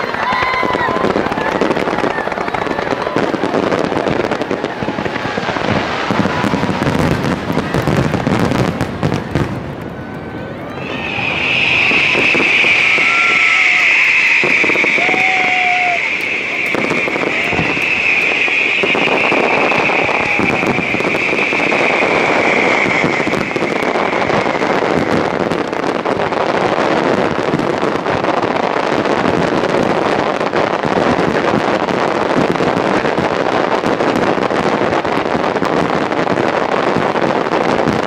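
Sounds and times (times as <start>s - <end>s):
fireworks bursting and crackling: 0.0s - 38.0s
high whistling tone: 10.6s - 26.7s.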